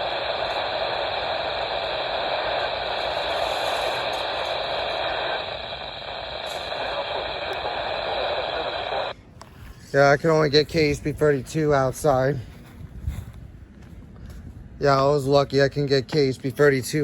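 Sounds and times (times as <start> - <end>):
radio static hiss: 0.0 - 9.2.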